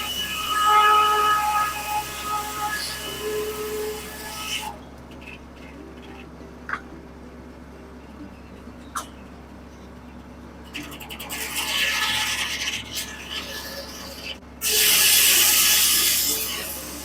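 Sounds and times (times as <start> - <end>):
circular saw blade cutting log: 0.0 - 7.0, 10.6 - 17.0
low hum: 0.0 - 14.6.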